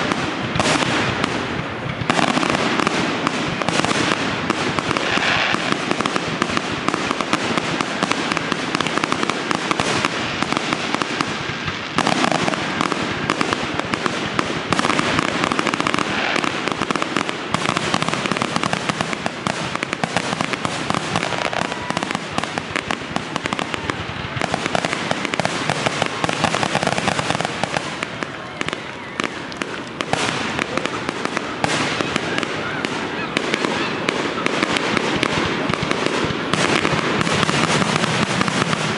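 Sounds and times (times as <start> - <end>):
fireworks bangs and crackling: 0.0 - 38.9.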